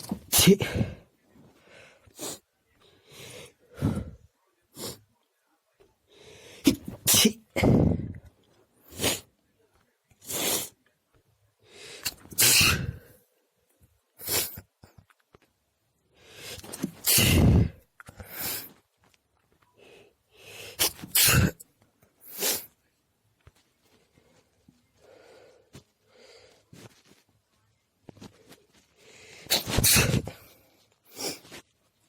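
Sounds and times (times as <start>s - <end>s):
person sneezing quietly: 0.0s - 1.1s, 6.6s - 8.2s, 12.0s - 13.1s, 16.6s - 18.8s, 20.6s - 21.6s, 29.4s - 31.6s.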